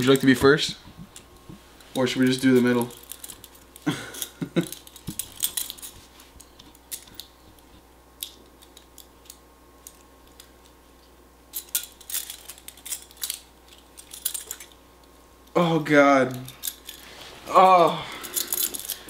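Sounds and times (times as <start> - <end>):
handcuffs clicking and clinking: 2.6 - 6.0, 8.2 - 10.5, 11.5 - 14.8, 16.3 - 17.0, 18.1 - 19.0.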